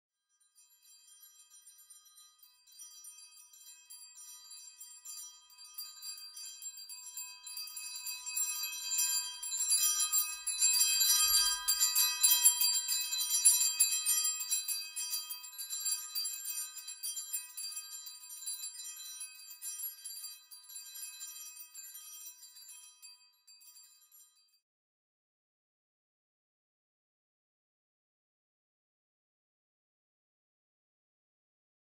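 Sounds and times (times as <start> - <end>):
sleigh bells jingling: 7.5 - 24.2.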